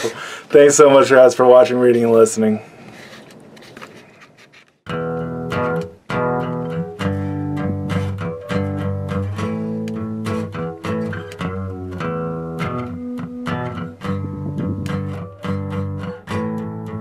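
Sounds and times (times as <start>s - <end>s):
guitar and bass guitar music: 4.9s - 17.0s.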